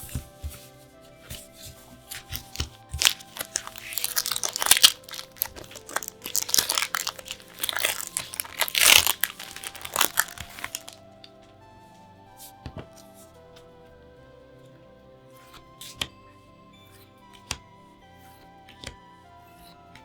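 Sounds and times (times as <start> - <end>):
soft background music: 0.0 - 20.0
packaging crinkling and tearing: 1.4 - 11.0.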